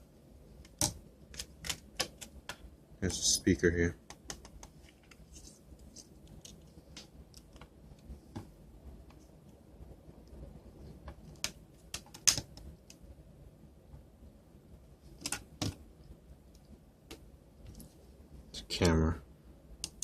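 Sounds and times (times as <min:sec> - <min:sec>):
small parts clicking and tapping: 0:19.8 - 0:20.0.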